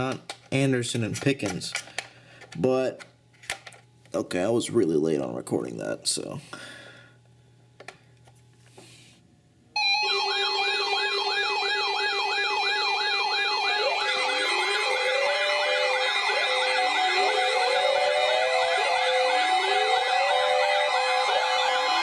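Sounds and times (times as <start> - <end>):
on-off beeping tone: 9.8 - 22.0
rising siren wails: 9.8 - 22.0
siren yelp warbling: 9.8 - 22.0
steady siren tones: 9.8 - 22.0.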